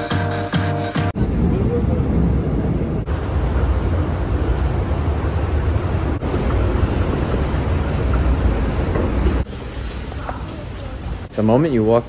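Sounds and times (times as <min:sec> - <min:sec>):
loud rumbling noise: 0:01.1 - 0:09.5.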